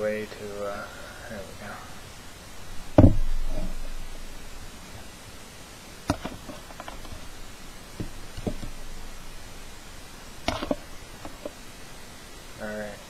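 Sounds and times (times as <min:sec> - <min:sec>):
louder knocks: 0:03.0 - 0:03.7.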